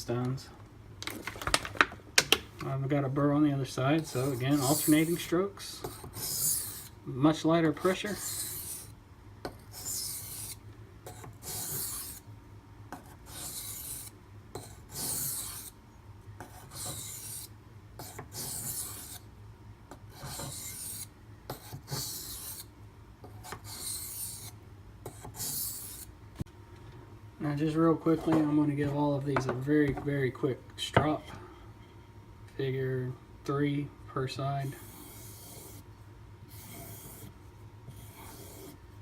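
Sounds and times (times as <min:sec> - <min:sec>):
knife scraping on whetstone: 0:04.0 - 0:07.0, 0:07.9 - 0:08.9, 0:09.6 - 0:12.2, 0:13.0 - 0:15.8, 0:16.4 - 0:19.2, 0:20.1 - 0:22.7, 0:23.3 - 0:26.1, 0:36.5 - 0:37.3, 0:37.9 - 0:38.8.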